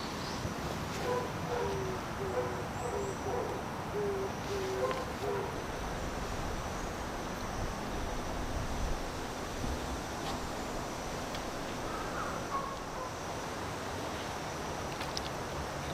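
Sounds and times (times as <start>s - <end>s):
bird hooting: 1.1s - 5.6s, 11.8s - 13.2s
wind noise: 4.7s - 13.1s.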